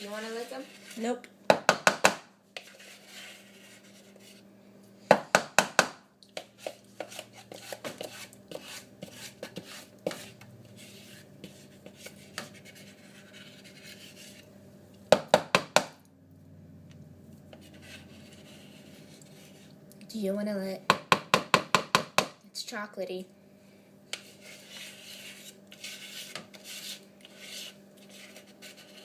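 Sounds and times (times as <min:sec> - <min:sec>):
scraping batter: 0:00.0 - 0:04.5, 0:05.1 - 0:14.5, 0:17.4 - 0:19.8, 0:24.1 - 0:29.0
utensil knocking on mixing bowl: 0:01.5 - 0:02.3, 0:05.1 - 0:06.0, 0:15.1 - 0:16.0, 0:20.9 - 0:22.4.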